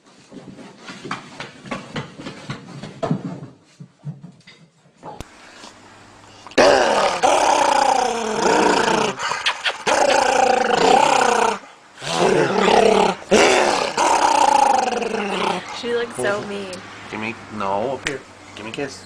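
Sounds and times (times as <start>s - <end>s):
dog growling: 6.5s - 16.7s.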